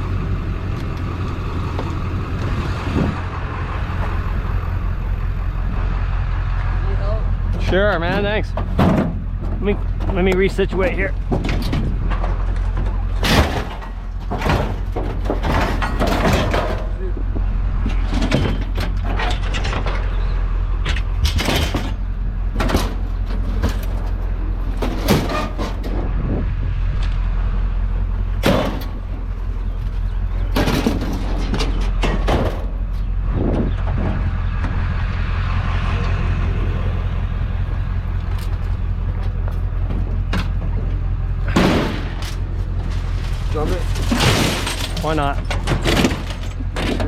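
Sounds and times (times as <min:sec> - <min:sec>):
vehicle engine idling: 0:00.0 - 0:44.1
objects knocking and clanking: 0:07.6 - 0:20.2, 0:20.8 - 0:26.1, 0:28.4 - 0:32.8, 0:39.2 - 0:47.0.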